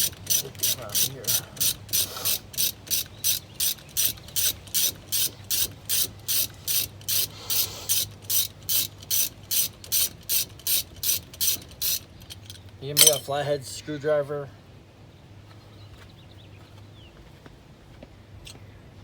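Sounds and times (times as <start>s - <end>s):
ratchet wrench clicking: 0.0s - 13.3s.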